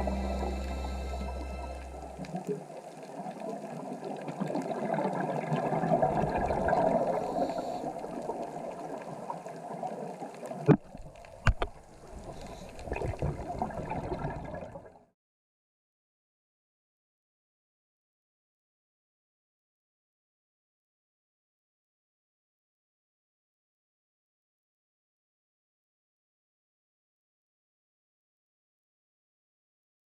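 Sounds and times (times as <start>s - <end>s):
muffled gurgling underwater: 0.0s - 9.9s.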